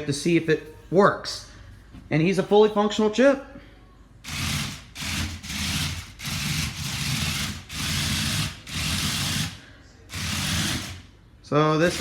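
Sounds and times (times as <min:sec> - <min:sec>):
toy robot motors whirring: 0:04.3 - 0:11.0.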